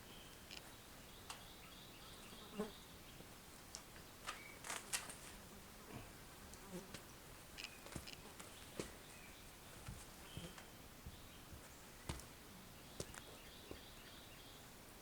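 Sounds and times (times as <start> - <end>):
low steady hiss: 0.0 - 15.0.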